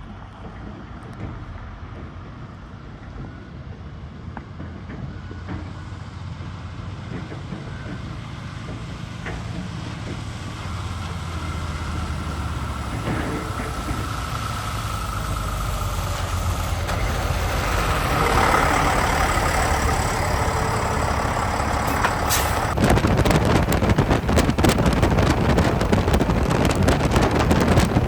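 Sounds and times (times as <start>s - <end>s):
truck engine rumbling: 0.0s - 28.0s
steady whine: 9.8s - 28.0s.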